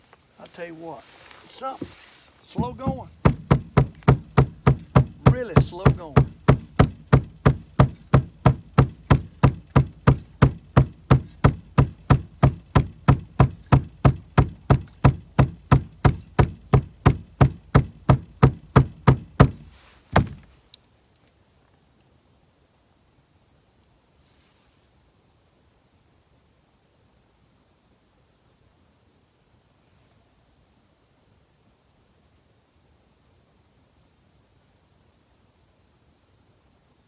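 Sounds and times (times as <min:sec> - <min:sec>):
rhythmic knocking: 0:02.6 - 0:20.5.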